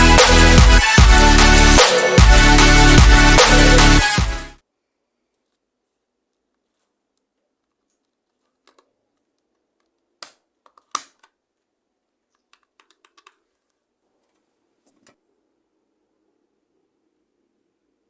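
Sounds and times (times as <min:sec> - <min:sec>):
mechanical keyboard clicks: 0:12.5 - 0:13.4.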